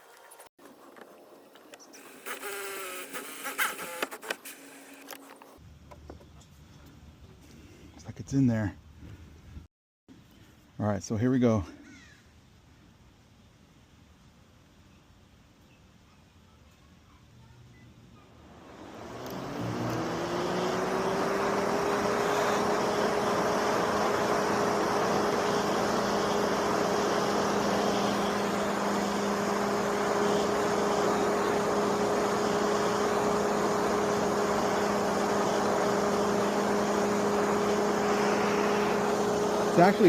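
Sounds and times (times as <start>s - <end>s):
rush of fan air: 18.4s - 40.0s.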